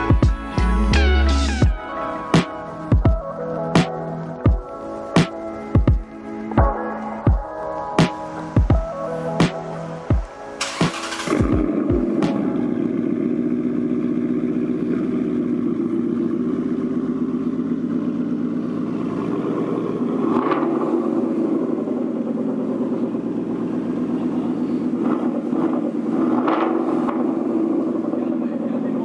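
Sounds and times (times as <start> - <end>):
car engine idling: 0.0 - 29.0.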